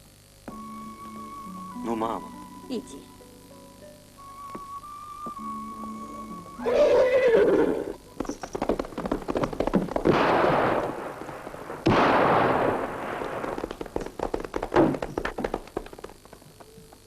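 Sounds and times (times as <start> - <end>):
horse whinnying: 6.6 - 8.0
hooves clattering: 6.6 - 11.8, 12.9 - 17.0
loud bangs: 10.0 - 14.0.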